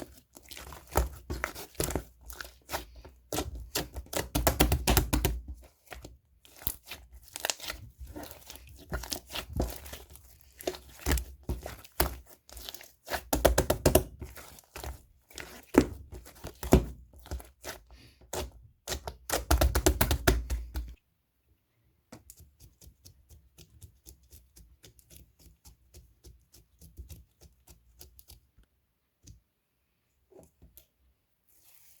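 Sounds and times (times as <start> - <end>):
slime squished by hand: 0.0 - 21.0.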